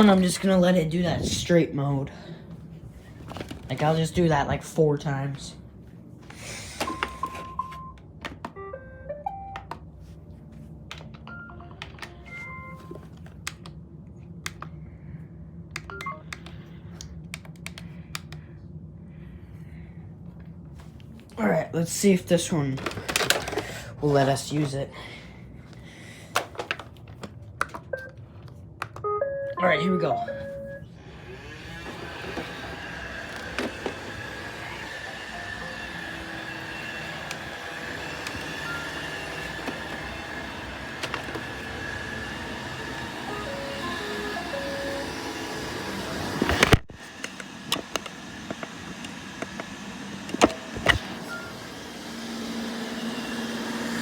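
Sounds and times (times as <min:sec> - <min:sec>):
robot vacuum motor hum: 0:31.0 - 0:54.0.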